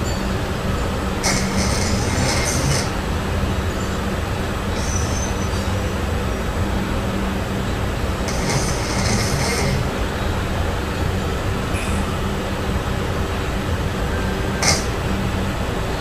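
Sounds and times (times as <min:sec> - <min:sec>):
cat snoring: 0:01.2 - 0:03.0, 0:08.2 - 0:10.0, 0:14.6 - 0:15.1
breathy hiss: 0:01.2 - 0:03.2, 0:08.1 - 0:10.2, 0:14.6 - 0:15.4.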